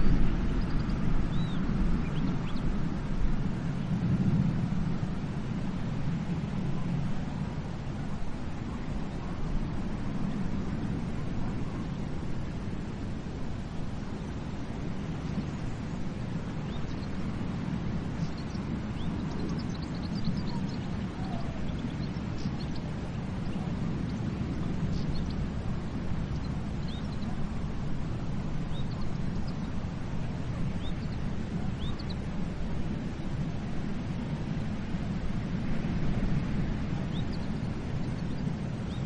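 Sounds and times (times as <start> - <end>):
ocean surf on a beach: 0.0 - 39.0.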